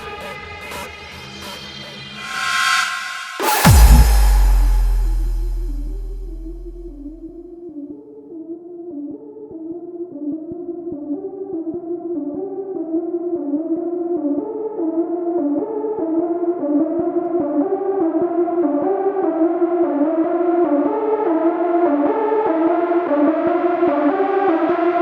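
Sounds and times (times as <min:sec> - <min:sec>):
deep bass tone: 0:02.2 - 0:07.4
stepping synthesizer melody: 0:02.7 - 0:07.3.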